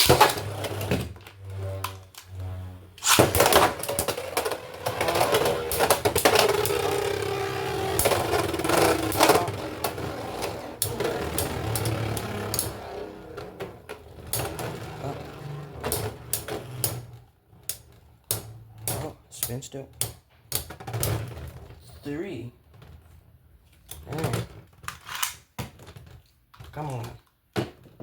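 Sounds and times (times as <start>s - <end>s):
spinning tops whining: 0.0s - 17.3s
tops clicking and knocking: 0.0s - 21.8s.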